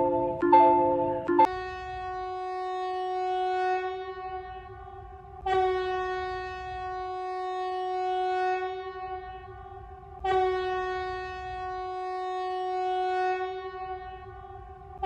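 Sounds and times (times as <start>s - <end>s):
buzzy alarm tone: 0.0s - 1.5s.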